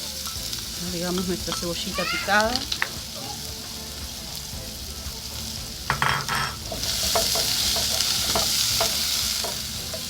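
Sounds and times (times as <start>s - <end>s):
onion sizzling in hot oil: 0.0s - 10.0s
spoon knocking against pot: 5.9s - 10.0s.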